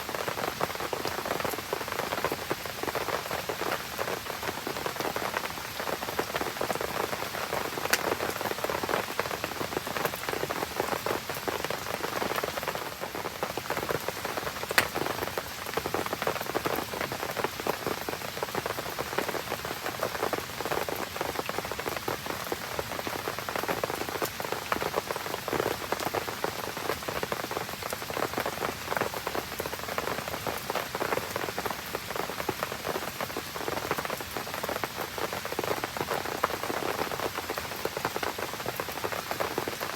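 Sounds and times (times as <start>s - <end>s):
rain pattering: 0.0s - 39.9s
fire crackling: 7.2s - 8.5s, 14.2s - 15.4s
fire popping: 7.8s - 8.3s, 14.7s - 15.2s.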